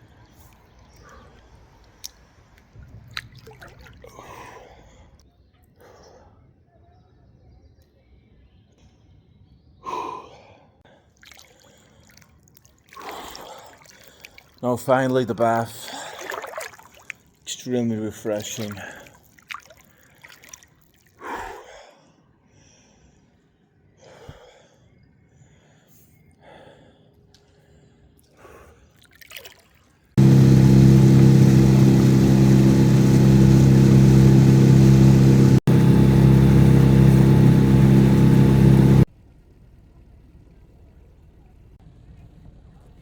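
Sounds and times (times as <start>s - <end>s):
water splashing: 1.9s - 4.4s, 11.2s - 21.1s, 29.1s - 39.1s
boat engine running: 30.2s - 39.1s.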